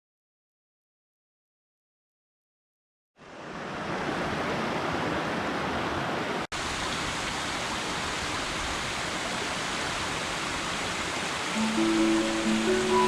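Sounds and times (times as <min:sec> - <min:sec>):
stream water rushing: 0:03.2 - 0:13.0.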